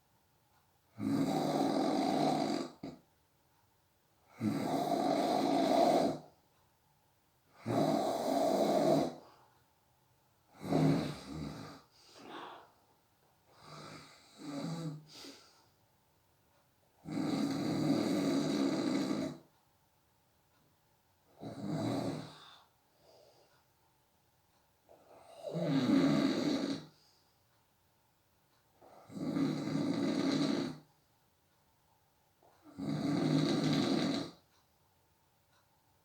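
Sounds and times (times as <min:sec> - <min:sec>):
person snoring: 0:01.0 - 0:03.0, 0:04.3 - 0:06.3, 0:07.5 - 0:09.4, 0:10.5 - 0:12.8, 0:13.5 - 0:15.4, 0:17.0 - 0:19.5, 0:21.4 - 0:22.7, 0:25.0 - 0:27.0, 0:28.8 - 0:30.9, 0:32.6 - 0:34.4.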